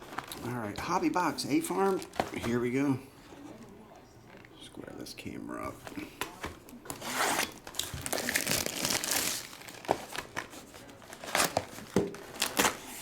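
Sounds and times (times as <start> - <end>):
plastic wrapper crinkling and tearing: 0.0 - 2.5, 6.9 - 13.0.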